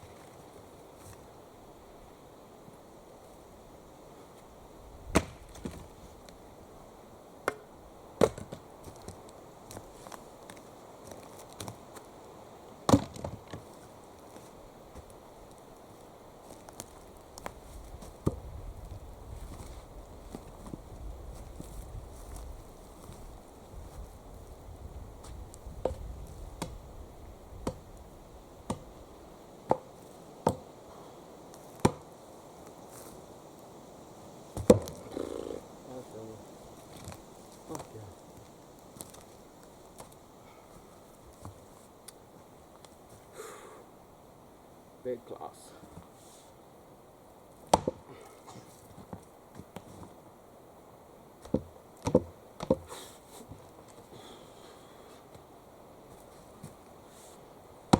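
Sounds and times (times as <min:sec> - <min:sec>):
axe chopping wood: 0:05.1 - 0:05.8, 0:07.4 - 0:08.6, 0:12.9 - 0:13.4, 0:27.6 - 0:27.8, 0:28.7 - 0:28.9, 0:29.7 - 0:30.7, 0:31.8 - 0:32.1, 0:34.6 - 0:35.0, 0:47.7 - 0:48.1, 0:51.4 - 0:52.9.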